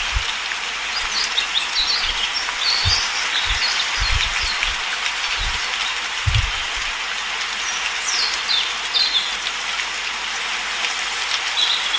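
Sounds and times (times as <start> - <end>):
soft low thumps: 0.0 - 0.4, 1.8 - 7.0
steady rain: 0.0 - 11.9
birds chirping: 0.9 - 7.0.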